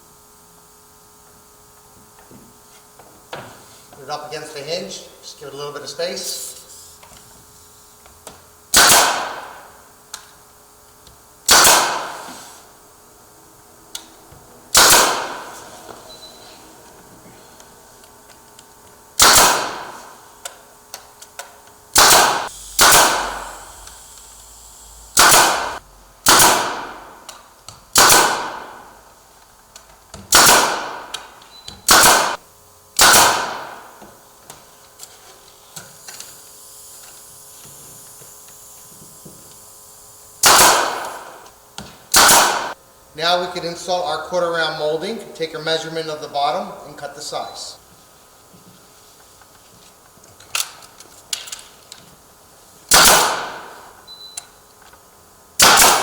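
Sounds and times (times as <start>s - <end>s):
nail gun firing into wood: 8.7s - 10.3s, 11.4s - 12.3s, 14.7s - 15.6s, 19.2s - 20.6s, 21.9s - 23.7s, 25.1s - 28.9s, 30.2s - 32.4s, 33.0s - 34.0s, 40.4s - 42.8s, 52.9s - 54.0s, 55.6s - 56.0s.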